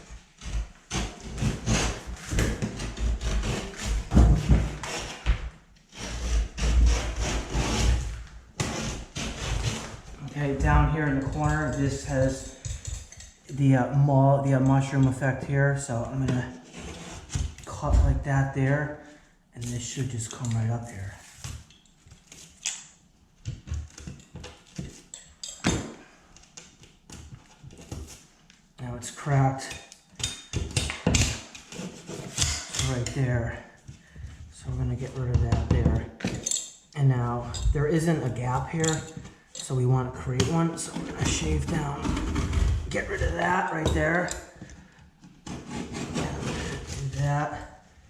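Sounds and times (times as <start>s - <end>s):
utility knife scraping drywall: 0.4s - 13.3s, 16.3s - 18.2s, 30.2s - 34.2s, 37.9s - 47.8s
knocks and thuds: 4.1s - 5.5s.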